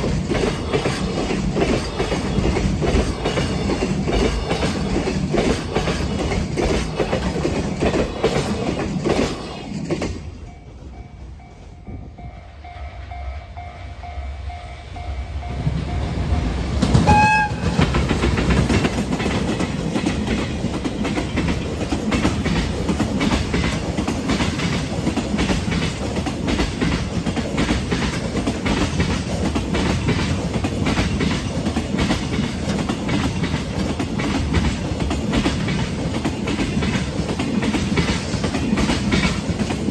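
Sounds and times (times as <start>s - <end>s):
train wheels clattering over joints: 0.0s - 11.9s, 16.5s - 39.9s
level-crossing warning bell: 10.1s - 18.2s
locomotive horn blast: 17.0s - 17.9s.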